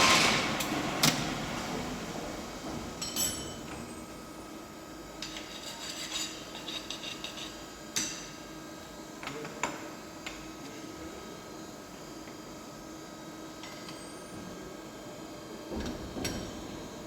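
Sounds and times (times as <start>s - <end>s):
steady machine hum: 0.0s - 5.3s.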